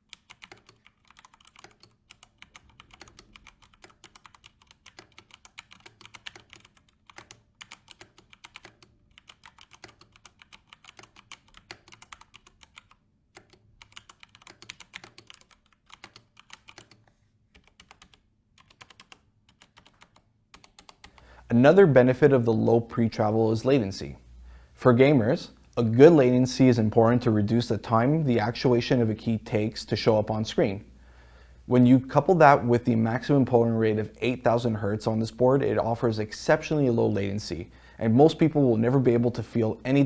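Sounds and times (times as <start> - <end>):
mechanical keyboard typing: 0.1 - 21.2.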